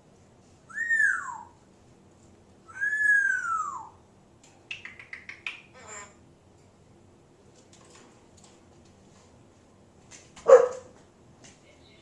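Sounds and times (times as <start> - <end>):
parrot whistling: 0.7 - 1.6, 2.7 - 4.0
parrot clicking chirps: 4.7 - 5.8.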